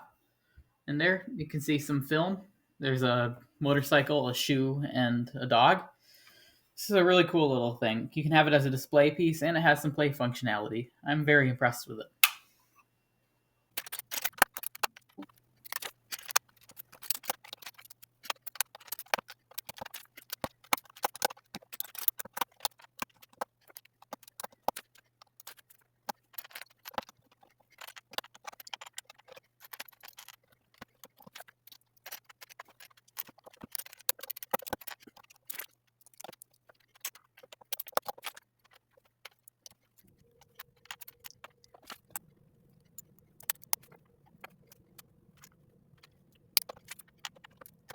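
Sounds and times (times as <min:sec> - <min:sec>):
plastic bricks clicking and rattling: 0:13.8 - 0:47.9.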